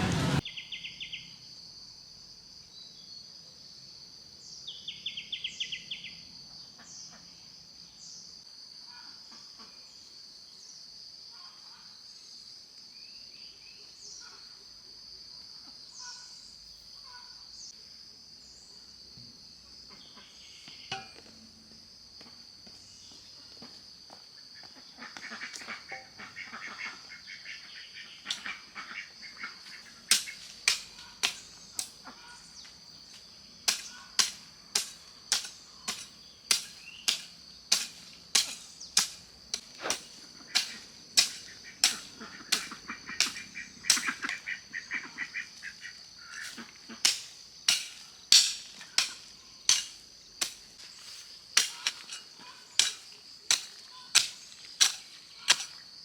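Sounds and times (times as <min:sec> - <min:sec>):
insects buzzing: 0:12.0 - 0:56.0.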